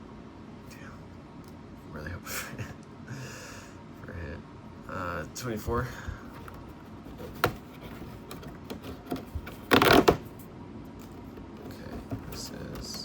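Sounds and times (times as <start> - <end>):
cardboard ripping: 7.1 - 10.3.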